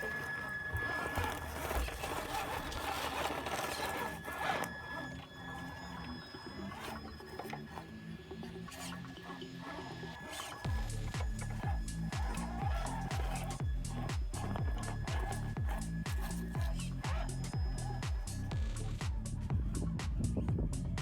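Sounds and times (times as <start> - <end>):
rough scraping: 0.0 - 19.1
rc car motor whining: 0.0 - 20.0
bass line: 10.7 - 21.0
heavy kick drum: 10.7 - 21.0.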